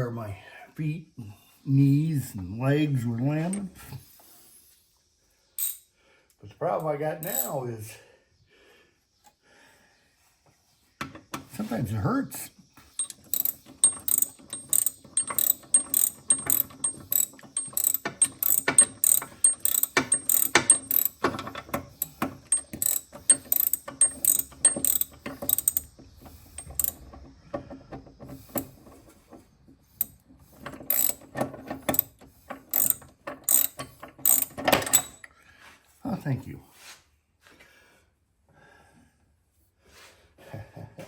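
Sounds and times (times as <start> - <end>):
socket ratchet wrench clicking: 7.2 - 7.5, 12.9 - 27.0, 30.0 - 35.2.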